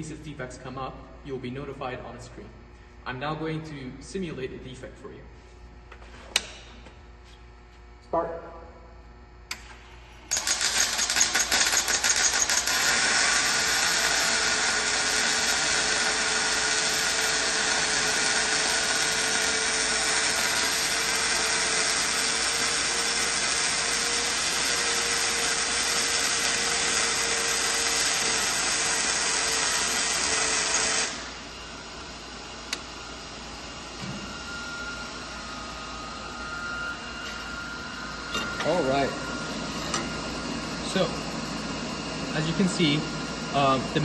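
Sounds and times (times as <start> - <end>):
welding arc crackling hiss: 9.5 - 31.5.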